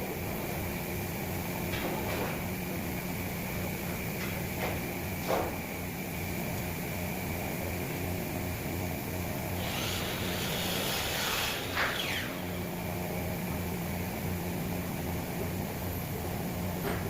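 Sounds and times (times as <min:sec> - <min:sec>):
low machine hum: 0:00.0 - 0:17.0
hissing rasp: 0:09.6 - 0:12.4.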